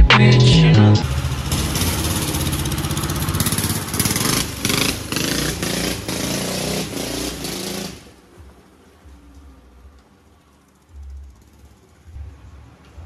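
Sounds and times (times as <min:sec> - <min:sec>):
vehicle engine revving: 0:00.8 - 0:13.0.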